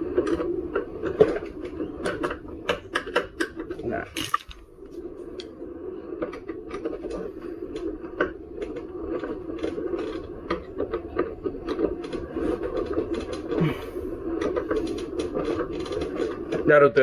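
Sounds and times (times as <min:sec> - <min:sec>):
screwdriver metal clicks and scrapes: 0:04.2 - 0:04.6.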